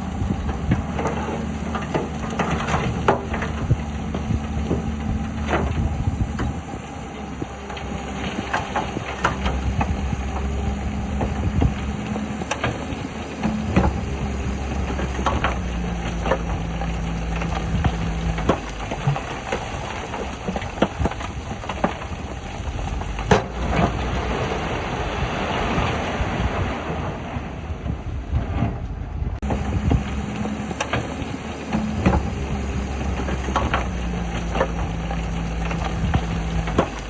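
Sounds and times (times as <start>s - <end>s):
heavy machinery diesel engine running: 0.0s - 37.0s
metal clanks and knocks: 22.9s - 24.1s.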